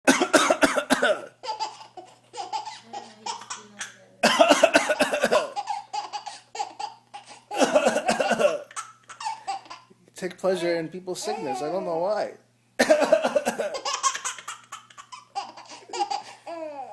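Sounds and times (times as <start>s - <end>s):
adult coughing: 0.1s - 1.4s, 3.6s - 6.5s, 7.5s - 8.8s, 12.8s - 13.9s
young child laughing: 13.6s - 16.9s.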